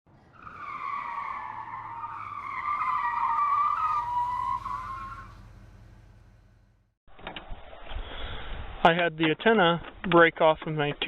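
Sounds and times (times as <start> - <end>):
car tires squealing: 0.2 - 6.4.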